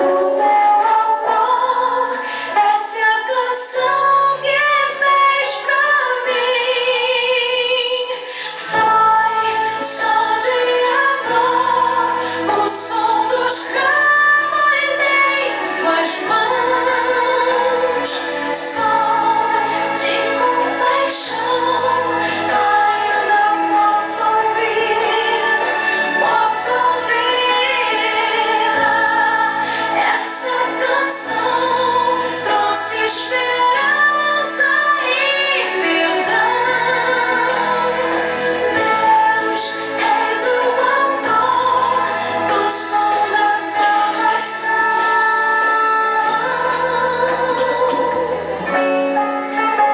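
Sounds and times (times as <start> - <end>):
instrumental backing music: 0.0 - 49.9
woman singing: 0.0 - 49.9.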